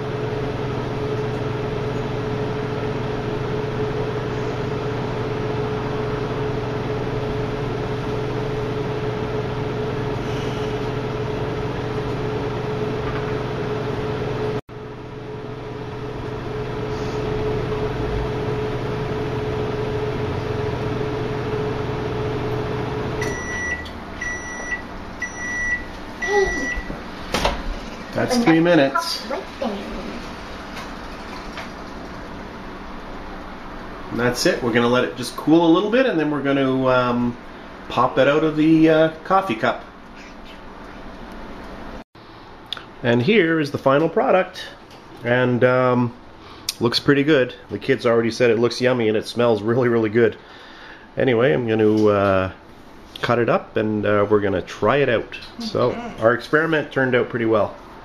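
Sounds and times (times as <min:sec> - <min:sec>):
microwave oven humming: 0:00.0 - 0:58.0
microwave short high beeps: 0:23.2 - 0:26.9.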